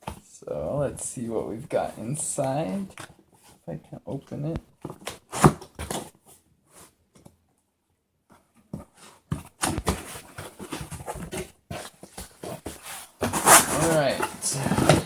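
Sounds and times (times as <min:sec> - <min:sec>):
packaging rustling and scraping: 0:08.8 - 0:15.0.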